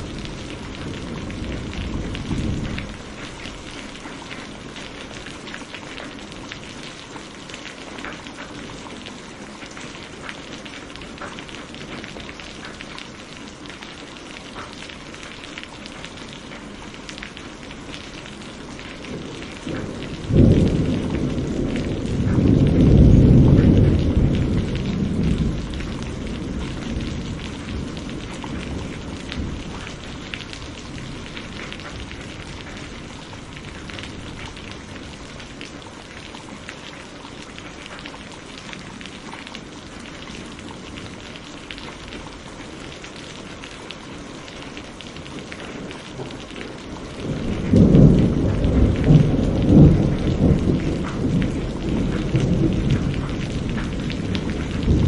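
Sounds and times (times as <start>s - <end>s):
thunder clap and rumble: 0.0s - 5.4s, 18.6s - 35.8s, 44.9s - 55.0s
steady rain falling: 0.0s - 55.0s.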